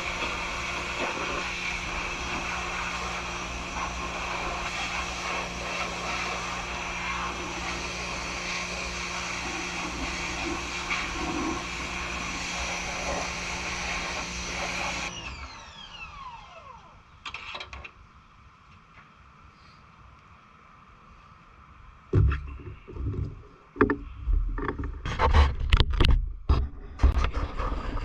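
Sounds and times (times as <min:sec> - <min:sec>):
pressure washer motor: 0:00.0 - 0:17.0
short knocks: 0:22.1 - 0:25.0.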